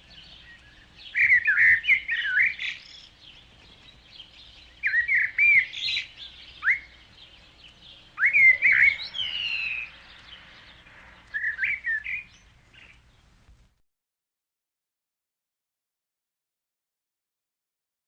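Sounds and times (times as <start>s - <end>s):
songbird chirping: 0.0s - 13.6s.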